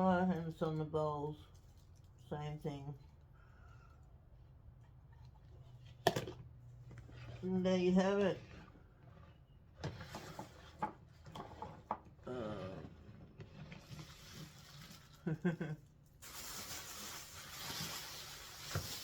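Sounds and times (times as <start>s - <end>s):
plastic dishware clicks and knocks: 6.0s - 6.4s.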